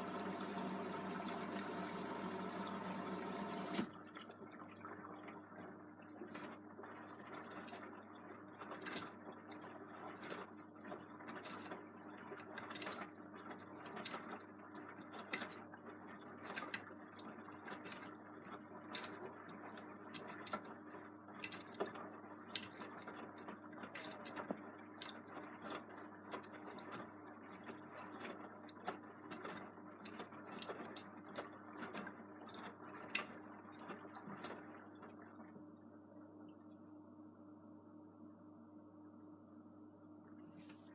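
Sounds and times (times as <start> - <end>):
washing machine motor hum: 0.0 - 40.9.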